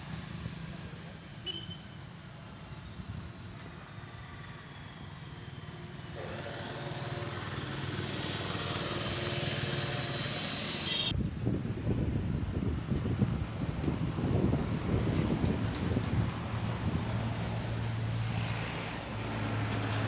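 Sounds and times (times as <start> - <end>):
wind buffeting microphone: 11.1 - 20.0.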